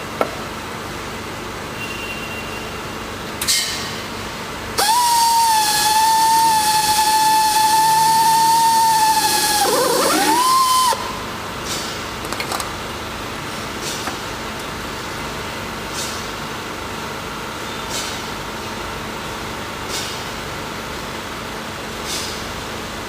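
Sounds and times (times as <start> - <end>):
motorised tool whining: 4.8 - 11.1.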